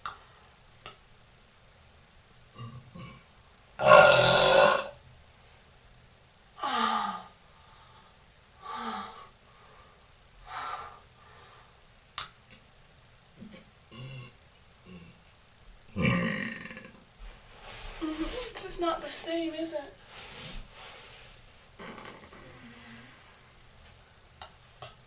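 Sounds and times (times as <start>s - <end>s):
woman burping: 3.8s - 4.9s, 16.0s - 17.0s, 21.8s - 22.6s.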